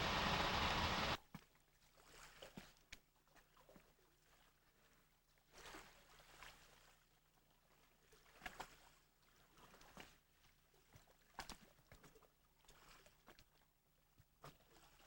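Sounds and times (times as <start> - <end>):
faint brief rushing sounds: 0.0 - 1.2.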